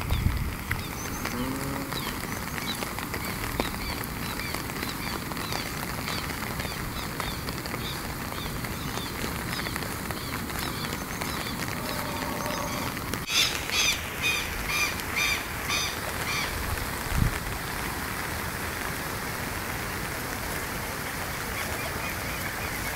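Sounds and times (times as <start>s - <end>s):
small birds chirping: 0.0s - 16.5s.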